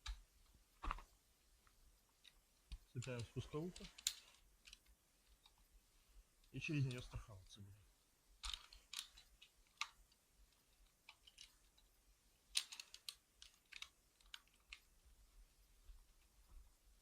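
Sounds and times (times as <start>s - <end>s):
metallic clicks of climbing hardware: 2.2s - 5.6s, 8.4s - 11.9s, 12.5s - 14.9s.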